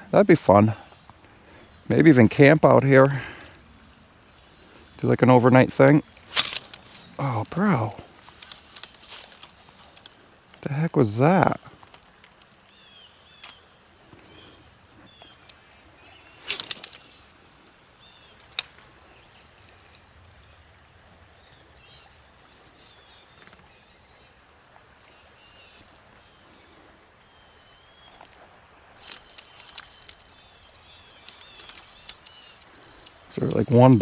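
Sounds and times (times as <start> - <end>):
small birds chirping: 0.0 - 20.8, 21.4 - 34.0
low outdoor hiss: 0.0 - 34.0
clicks and rustles: 5.7 - 10.6, 11.6 - 13.6, 16.2 - 17.3, 18.3 - 20.1, 29.0 - 34.0.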